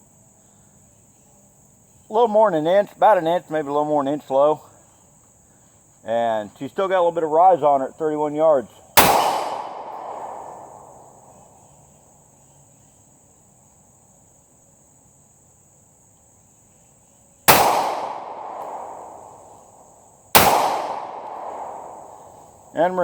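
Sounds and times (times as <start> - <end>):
high insect drone: 0.0 - 23.0
pistol shots with ringing: 9.0 - 11.1, 17.5 - 19.5, 20.3 - 22.3.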